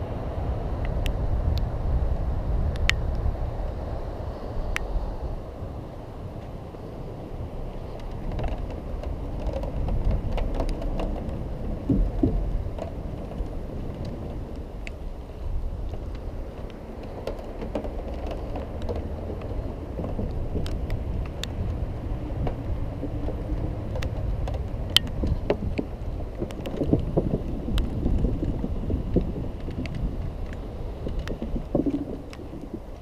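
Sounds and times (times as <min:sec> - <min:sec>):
electric scooter rumble: 0:00.0 - 0:33.0
wind on microphone: 0:00.0 - 0:33.0.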